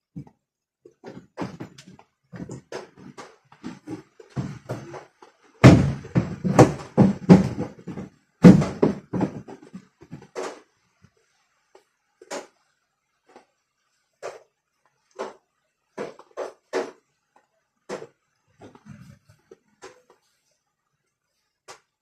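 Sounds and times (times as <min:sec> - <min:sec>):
hard objects knocking and clattering: 0:00.9 - 0:10.7.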